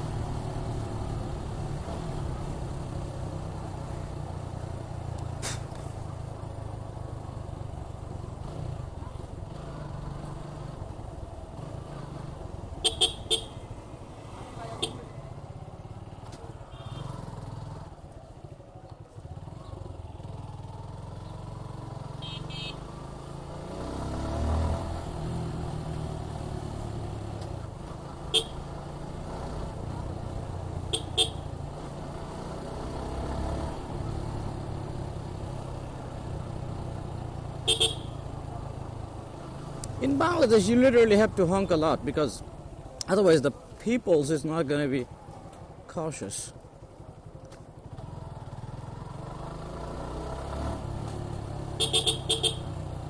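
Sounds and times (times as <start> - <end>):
motorcycle engine rumble: 0.0 - 23.3, 24.4 - 53.0
horn toots: 12.8 - 13.6, 16.6 - 17.4, 22.1 - 22.9, 28.3 - 28.7, 30.8 - 31.5, 37.6 - 38.3, 51.7 - 52.8.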